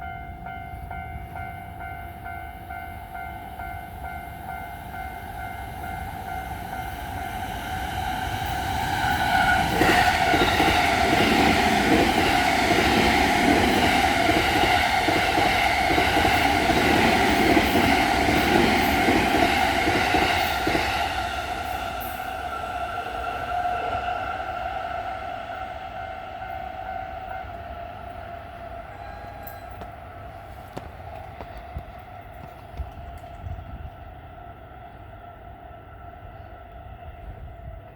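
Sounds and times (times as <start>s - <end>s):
crossing warning bell ringing: 0.0s - 24.5s, 25.3s - 33.5s
electric train passing: 0.0s - 37.9s
train wheels clacking: 8.2s - 22.7s, 28.9s - 33.6s.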